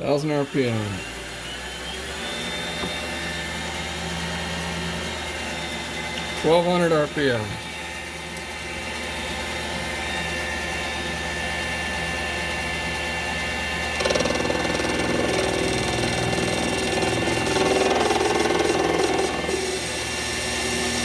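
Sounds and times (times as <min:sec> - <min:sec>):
lathe spindle humming: 0:00.0 - 0:21.0
lathe tool cutting metal: 0:00.0 - 0:21.0.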